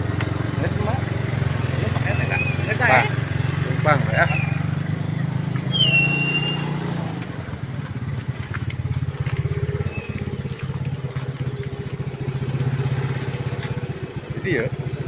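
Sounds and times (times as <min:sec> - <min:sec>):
small motorcycle engine running: 0:00.0 - 0:15.0
high squeal: 0:02.0 - 0:03.1, 0:04.0 - 0:04.8, 0:05.6 - 0:07.2.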